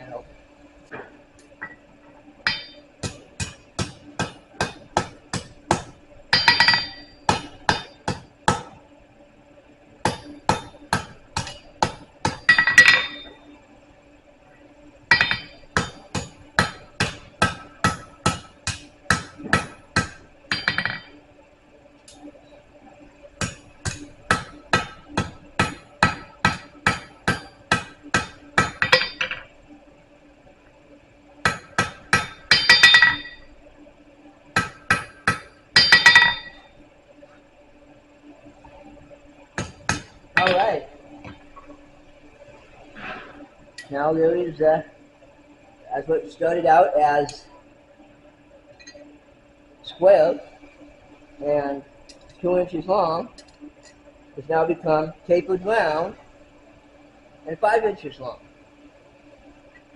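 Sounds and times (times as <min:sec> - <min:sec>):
steady low hum: 0:00.0 - 0:59.9
hammer striking steel on anvil: 0:02.5 - 0:08.7, 0:10.0 - 0:13.3, 0:15.1 - 0:21.1, 0:23.4 - 0:29.4, 0:31.4 - 0:33.4, 0:34.6 - 0:36.6, 0:39.6 - 0:40.8.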